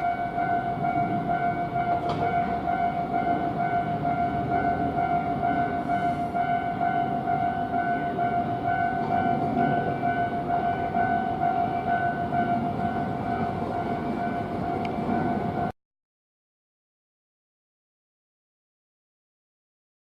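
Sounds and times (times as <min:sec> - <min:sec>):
level crossing bell ringing: 0:00.0 - 0:15.7
train running past: 0:00.0 - 0:15.7.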